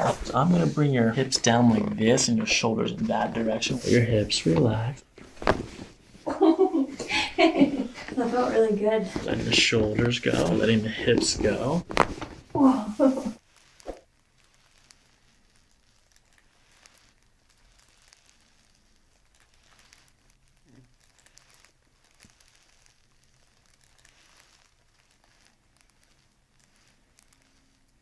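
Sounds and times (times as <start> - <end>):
faint rustling and crinkling: 0.0 - 28.0
light ticks of movement: 13.5 - 28.0.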